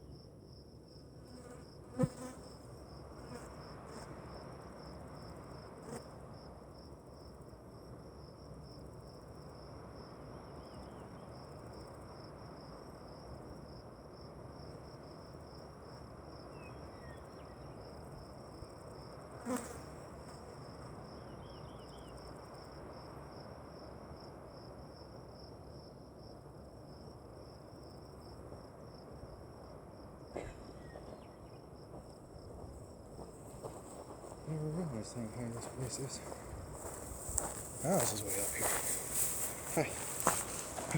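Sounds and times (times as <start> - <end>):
background hiss: 0.0 - 40.9
crickets trilling: 0.0 - 40.9.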